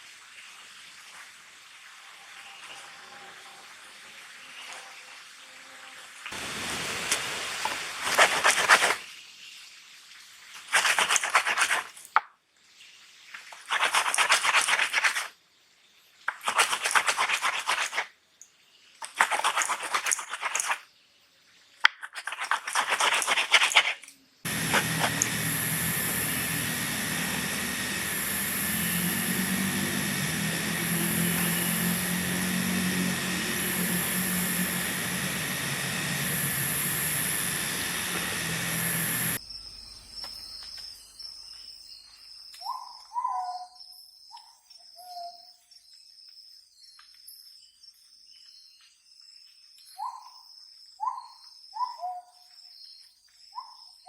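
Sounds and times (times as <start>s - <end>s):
steady hiss: 6.4s - 10.5s
scraping strokes: 7.6s - 9.0s, 10.6s - 12.0s, 13.4s - 15.3s, 16.3s - 18.1s, 19.0s - 20.8s, 21.9s - 39.4s
low hum: 24.5s - 40.0s.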